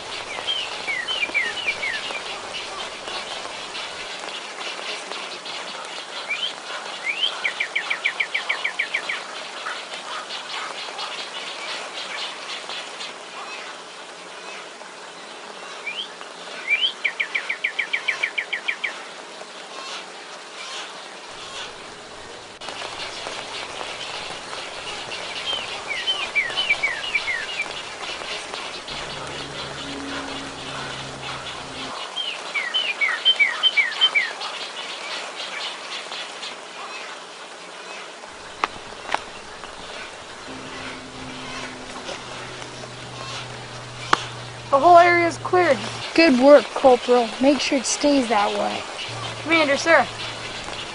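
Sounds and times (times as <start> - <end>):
songbird singing: 0.0 - 5.5, 21.3 - 34.4, 38.3 - 50.9
bird down-slurred chirps: 21.4 - 31.9.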